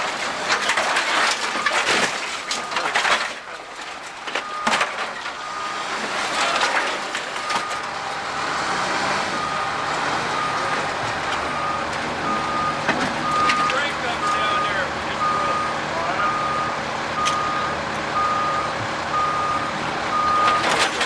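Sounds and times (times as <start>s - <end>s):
wood and debris cracking: 0.0s - 14.6s, 20.3s - 21.0s
diesel engine running: 0.0s - 21.0s
backup alarm beeping: 4.4s - 5.9s, 7.4s - 8.7s, 9.3s - 20.7s.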